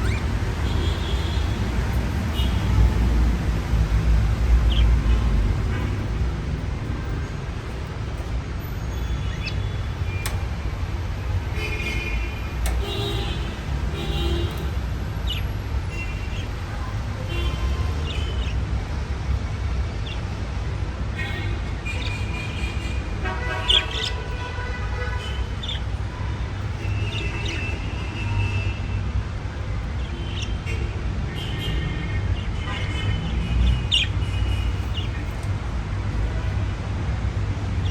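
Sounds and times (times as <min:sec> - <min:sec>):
budgerigars chattering and chirping: 0:00.0 - 0:01.5, 0:04.6 - 0:06.1, 0:09.2 - 0:10.4, 0:23.6 - 0:24.3, 0:25.2 - 0:26.0, 0:26.8 - 0:27.8, 0:33.6 - 0:35.5.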